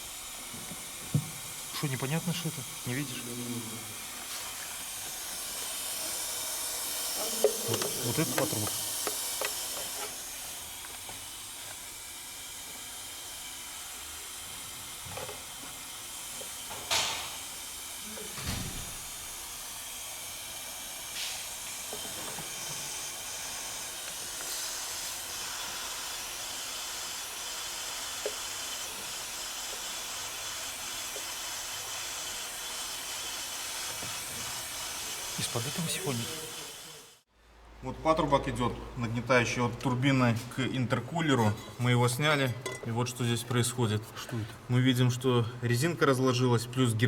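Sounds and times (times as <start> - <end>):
compressed air hissing from leak: 0.0 - 37.3.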